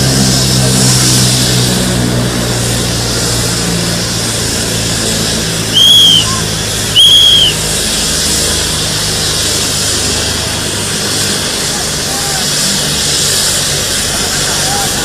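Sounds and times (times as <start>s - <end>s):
low engine hum: 0.0s - 15.0s
traffic din: 0.0s - 15.0s
shrill whistles: 5.7s - 7.6s
crowd din: 5.8s - 7.6s, 14.0s - 15.0s.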